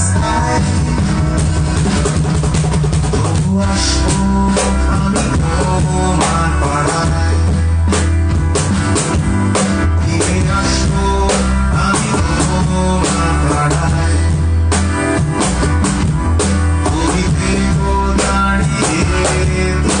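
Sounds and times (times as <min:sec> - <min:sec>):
instrumental band music: 0:00.0 - 0:20.0.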